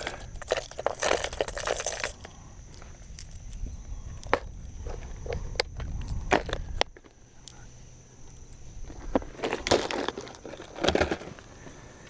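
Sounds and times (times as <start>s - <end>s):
plastic clicks and crinkles: 0.0s - 3.6s.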